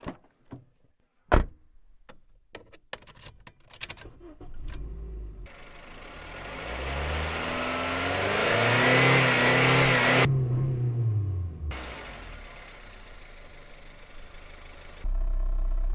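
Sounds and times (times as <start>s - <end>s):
car engine starting and revving: 4.1s - 15.9s.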